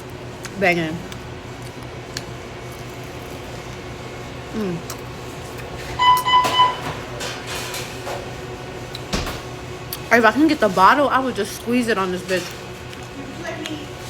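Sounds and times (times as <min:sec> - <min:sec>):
electronic beep: 0:06.0 - 0:06.9.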